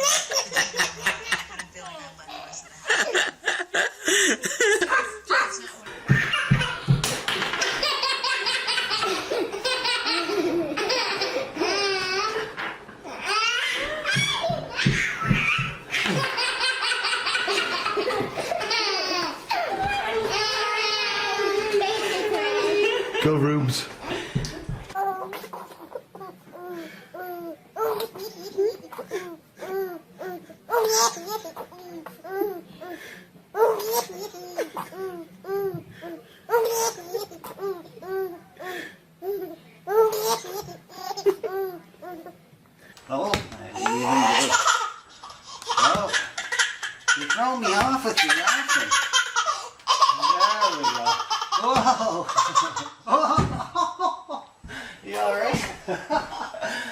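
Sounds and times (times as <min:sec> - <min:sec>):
baby laughing: 0:00.0 - 0:23.2, 0:33.6 - 0:35.7, 0:36.5 - 0:38.4, 0:43.8 - 0:54.2.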